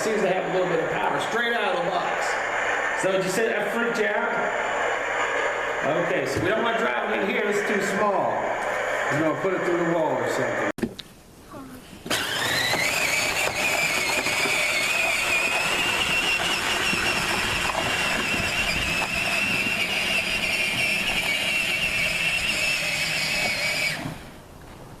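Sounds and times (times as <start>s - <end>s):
toy truck electric motors whining: 12.1s - 24.4s.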